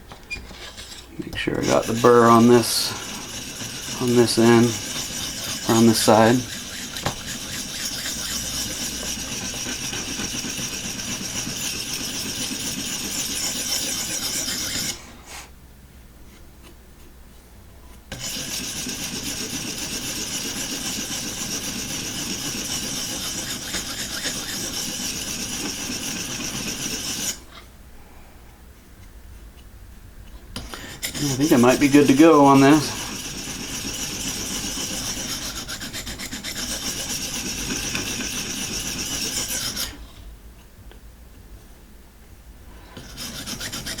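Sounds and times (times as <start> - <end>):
sharpening stone rasping on knife: 0.7 - 15.0, 18.1 - 27.4, 30.6 - 40.0, 43.0 - 44.0.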